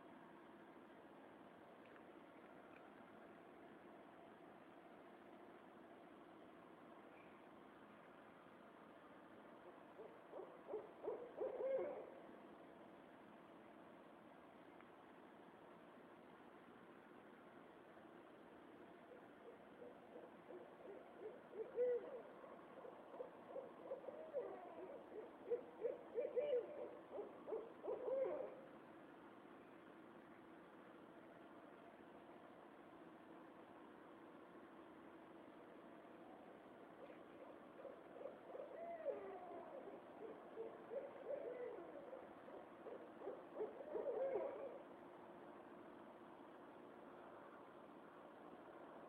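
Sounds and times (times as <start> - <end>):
short hooting calls: 9.6 - 12.2, 19.0 - 28.8, 36.2 - 45.0.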